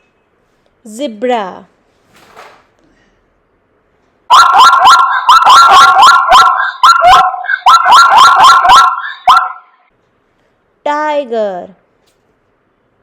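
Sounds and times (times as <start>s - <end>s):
zebra yelping barks: 4.3s - 9.7s.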